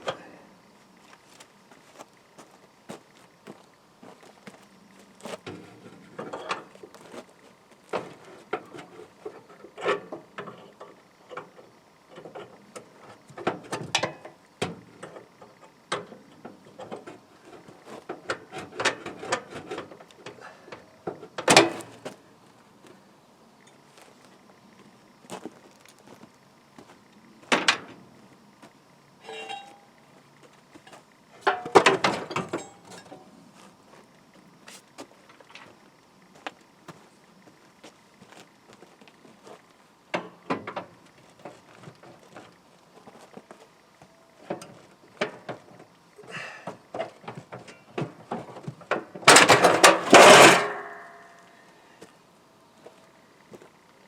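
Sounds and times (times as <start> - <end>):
clanks of tools and metal parts: 5.4 - 6.7, 8.0 - 12.5, 13.4 - 15.3, 15.9 - 22.0, 27.5 - 27.9, 29.2 - 29.9, 30.8 - 33.3, 40.1 - 41.6, 46.7 - 51.5.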